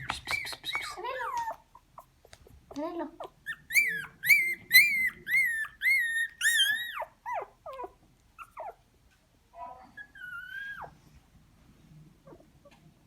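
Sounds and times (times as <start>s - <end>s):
puppy whining and whimpering: 0.0s - 2.5s, 3.2s - 8.9s, 9.5s - 11.0s, 12.2s - 12.9s.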